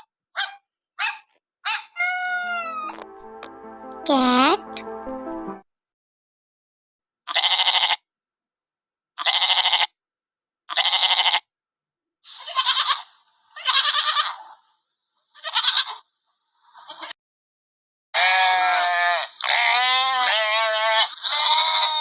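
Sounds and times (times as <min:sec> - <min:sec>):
animal bleating: 0:02.0 - 0:02.9, 0:07.3 - 0:08.1, 0:09.2 - 0:10.0, 0:10.7 - 0:11.5, 0:12.4 - 0:14.6, 0:15.4 - 0:16.0, 0:16.8 - 0:17.2, 0:18.2 - 0:22.0.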